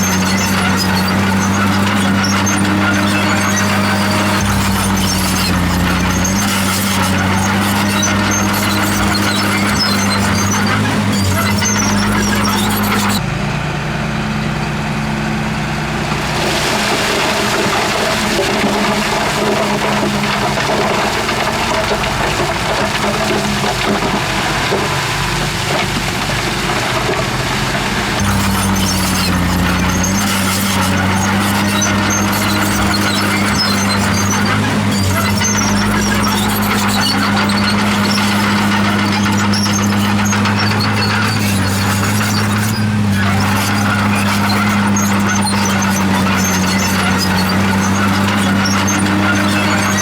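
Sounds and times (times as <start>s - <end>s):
mechanical din: 0.0s - 13.2s, 28.2s - 50.0s
diesel engine under load: 0.0s - 50.0s.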